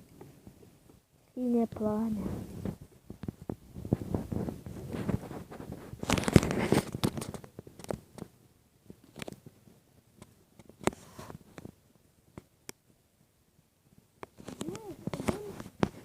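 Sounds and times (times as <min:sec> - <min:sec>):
fire snaps and pops: 0:02.4 - 0:09.6, 0:10.2 - 0:12.8.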